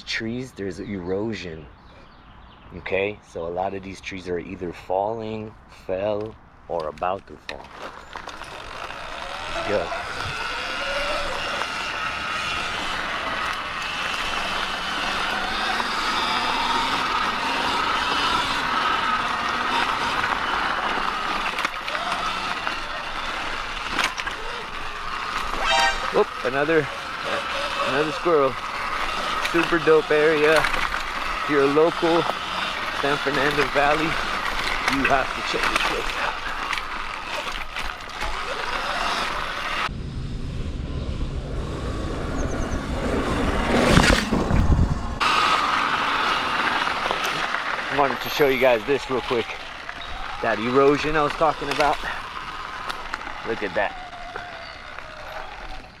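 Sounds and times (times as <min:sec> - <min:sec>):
tyres on dirt: 0:00.0 - 0:39.9, 0:42.2 - 0:56.0
electric motor whine: 0:08.1 - 0:39.9
deep rumble: 0:39.9 - 0:45.2
wind rushing over microphone: 0:39.9 - 0:45.2.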